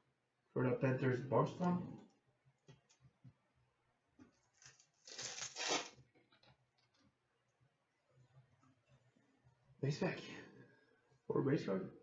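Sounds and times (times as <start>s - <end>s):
wrapper tearing: 4.5s - 6.0s.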